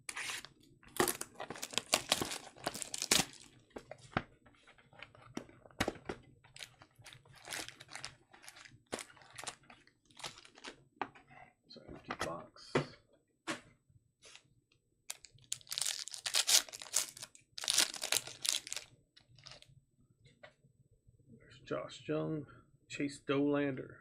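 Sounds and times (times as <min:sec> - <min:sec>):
wrapping crinkling and tearing: 0:00.2 - 0:03.6, 0:06.5 - 0:10.8, 0:15.1 - 0:19.6
card packs rustling and tapping: 0:00.9 - 0:04.4, 0:05.0 - 0:11.2, 0:15.1 - 0:19.6.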